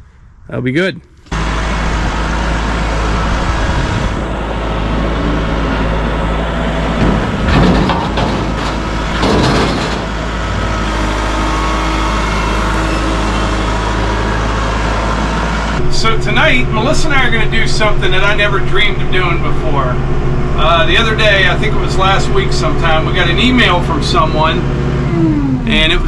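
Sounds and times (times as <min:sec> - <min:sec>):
vehicle engine running: 0:01.3 - 0:26.0
rattling knocks: 0:03.8 - 0:13.0.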